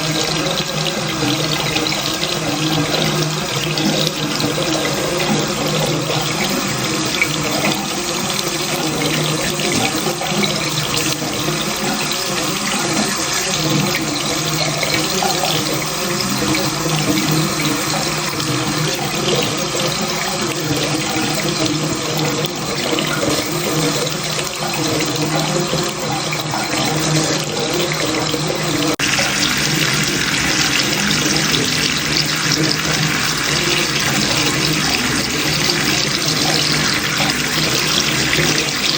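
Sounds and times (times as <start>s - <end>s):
tap water running into sink: 0.0s - 38.9s.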